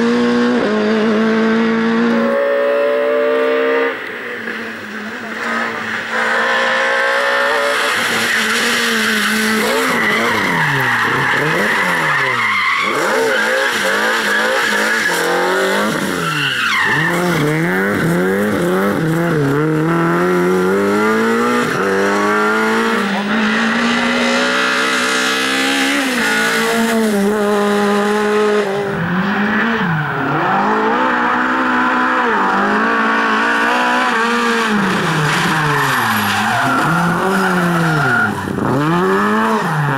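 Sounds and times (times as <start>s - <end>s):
rally car engine revving: 0.0s - 39.9s
tyre squeal: 7.3s - 18.1s, 34.8s - 39.9s.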